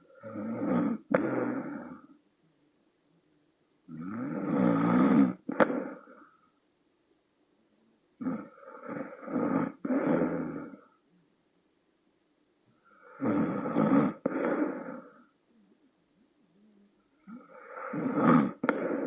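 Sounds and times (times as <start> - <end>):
woman snoring: 0.0 - 2.1, 3.9 - 6.3, 8.2 - 11.0, 12.9 - 15.3, 17.2 - 19.0.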